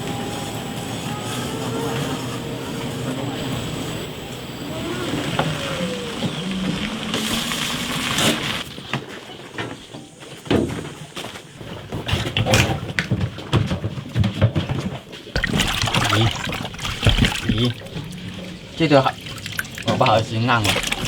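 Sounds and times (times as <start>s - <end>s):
water sloshing and splashing: 12.0s - 21.0s.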